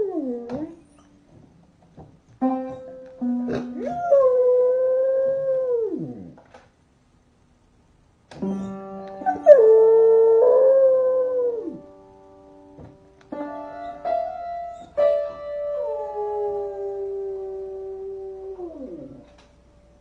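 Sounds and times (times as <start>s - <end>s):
piano chords: 2.1s - 5.9s, 8.4s - 20.0s.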